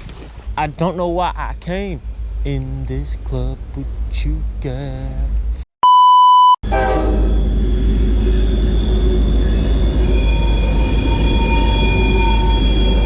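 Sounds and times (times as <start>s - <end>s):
wheels squealing on rails: 6.8s - 13.0s.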